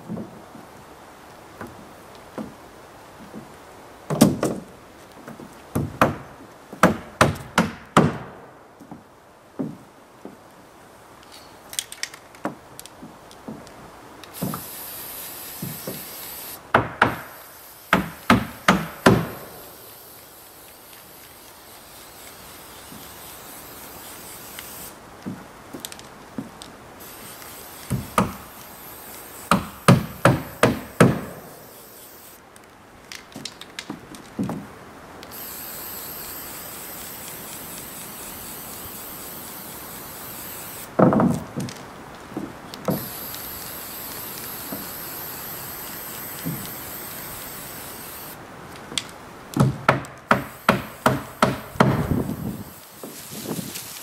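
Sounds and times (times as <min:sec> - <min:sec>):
hammer striking wood: 0:06.8 - 0:08.3, 0:16.7 - 0:19.5, 0:27.9 - 0:28.4, 0:29.5 - 0:31.5, 0:49.6 - 0:52.3.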